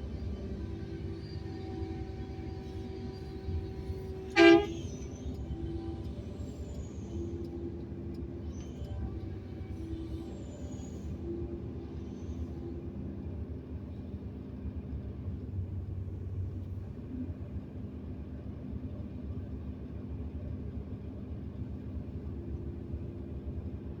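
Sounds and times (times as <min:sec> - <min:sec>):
excavator diesel engine rumbling: 0:00.0 - 0:19.1.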